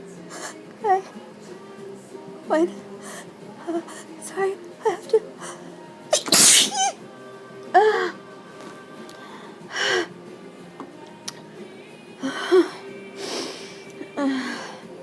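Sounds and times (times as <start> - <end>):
faint music: 0.0 - 15.0.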